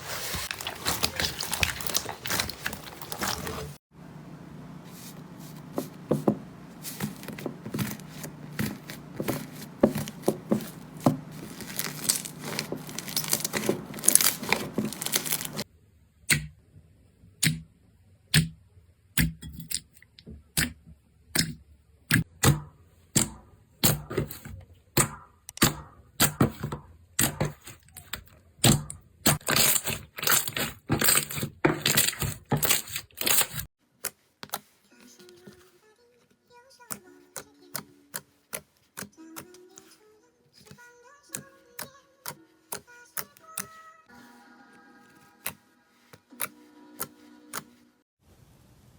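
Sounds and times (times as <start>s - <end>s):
slime crackling and squishing: 0.0s - 3.8s, 6.8s - 15.7s.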